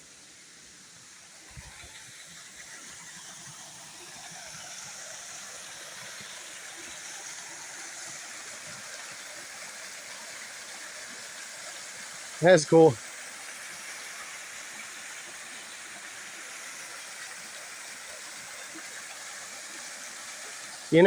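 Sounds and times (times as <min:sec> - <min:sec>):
water rushing over dam: 0:01.5 - 0:14.0.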